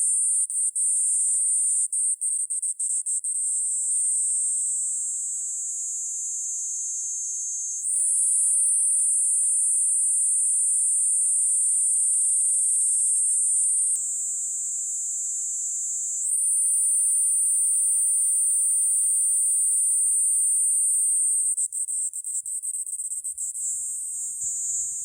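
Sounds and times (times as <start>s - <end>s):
cicada buzzing: 0.0s - 4.2s, 7.8s - 14.0s, 16.2s - 25.0s.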